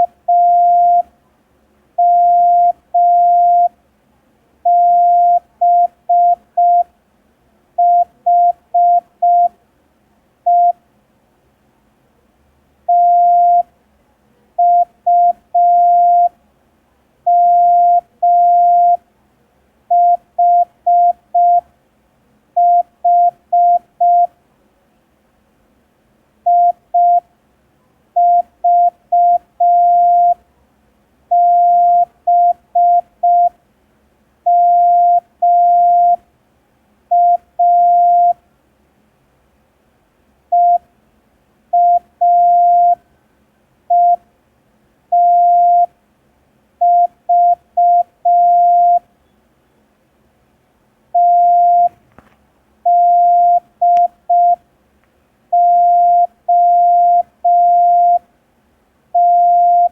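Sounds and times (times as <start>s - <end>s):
morse code beeps: 0.0s - 1.0s, 2.0s - 3.7s, 4.7s - 6.9s, 7.8s - 9.5s, 10.5s - 10.8s, 12.9s - 13.7s, 14.6s - 16.3s, 17.3s - 19.0s, 19.9s - 21.6s, 22.6s - 24.3s, 26.5s - 27.2s, 28.2s - 30.4s, 31.3s - 33.5s, 34.5s - 36.2s, 37.1s - 38.4s, 40.6s - 40.8s, 41.8s - 43.0s, 43.9s - 44.2s, 45.2s - 45.9s, 46.8s - 49.0s, 51.2s - 52.0s, 52.9s - 54.6s, 55.6s - 58.2s, 59.2s - 59.9s.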